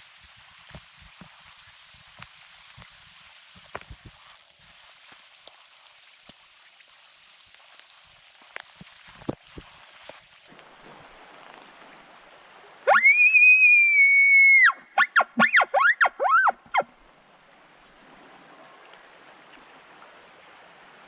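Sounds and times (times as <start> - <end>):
elk bugling: 15.0 - 16.9.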